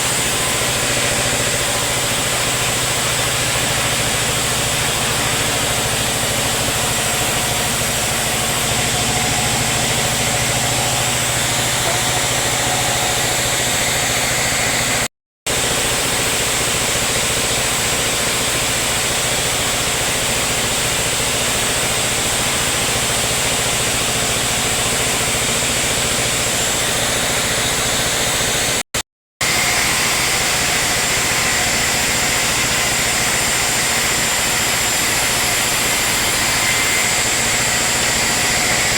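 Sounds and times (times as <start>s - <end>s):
machinery engine hum: 0.0s - 15.1s.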